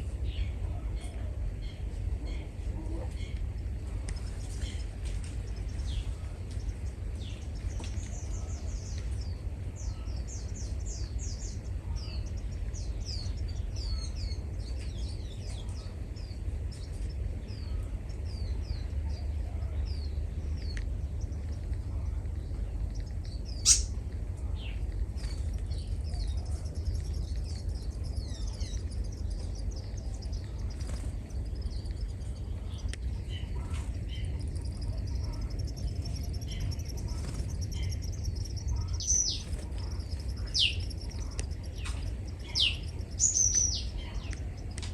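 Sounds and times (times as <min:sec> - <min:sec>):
small birds chirping: 0:00.0 - 0:44.9
steady low rumble: 0:00.0 - 0:44.9.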